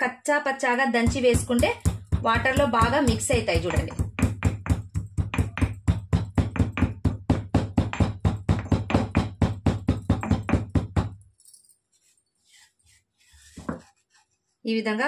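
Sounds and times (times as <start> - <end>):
pestle crushing peppercorns: 1.1 - 11.2.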